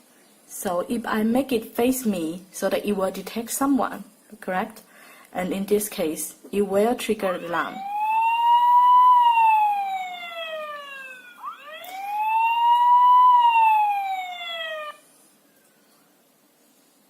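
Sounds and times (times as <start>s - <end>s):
alarm siren wailing: 7.3s - 15.0s.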